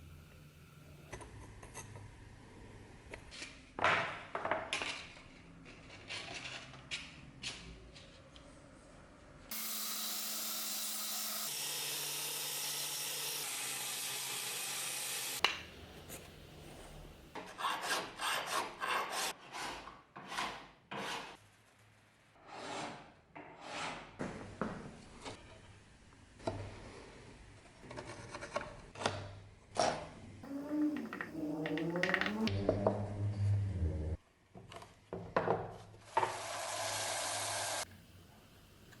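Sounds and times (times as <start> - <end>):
power tool running: 9.5 - 15.4
file rasping on an axe: 17.4 - 21.4, 22.4 - 24.1.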